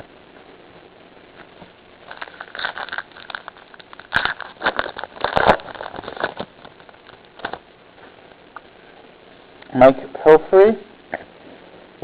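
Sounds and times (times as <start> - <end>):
foil card pack crinkling: 2.0 - 7.6.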